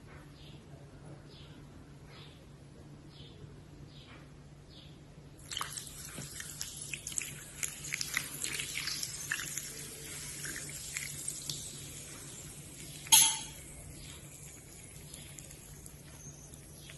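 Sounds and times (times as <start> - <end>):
dry clay being chewed: 13.7 - 16.9.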